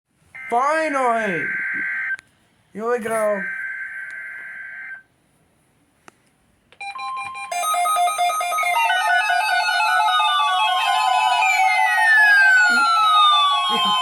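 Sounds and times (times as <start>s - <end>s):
loud electronic music: 8.8s - 14.0s.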